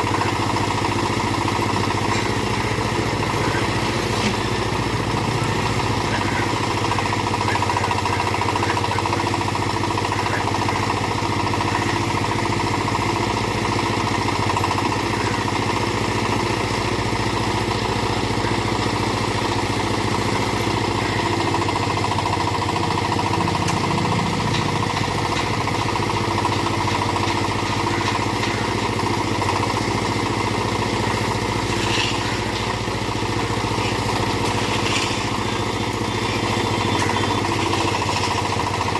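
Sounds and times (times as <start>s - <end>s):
backhoe engine running: 0.0s - 38.9s.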